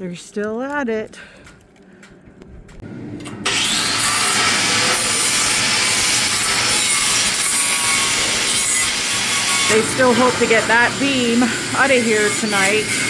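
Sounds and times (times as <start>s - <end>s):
power tool cutting steel: 3.2s - 13.0s.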